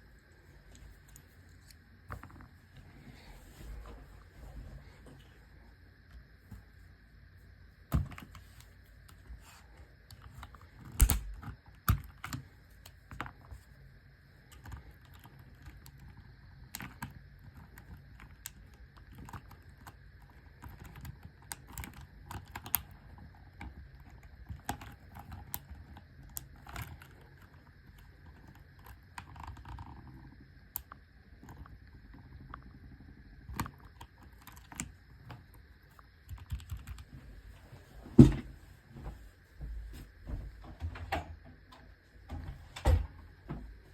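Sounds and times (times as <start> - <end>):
mechanical keyboard typing: 14.5 - 22.9, 23.6 - 31.7, 33.4 - 34.9, 36.2 - 37.1.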